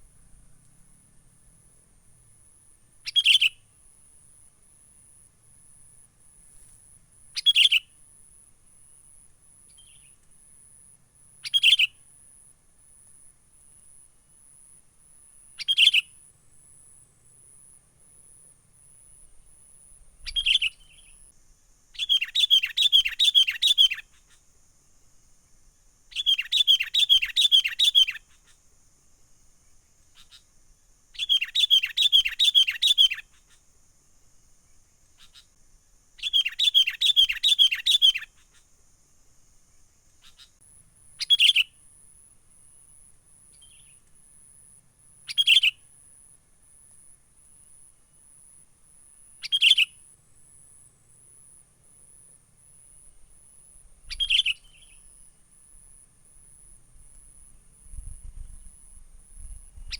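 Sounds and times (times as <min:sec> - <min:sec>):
short single bird calls: 0:54.0 - 0:55.2
bulbul chirping: 0:54.1 - 0:55.1.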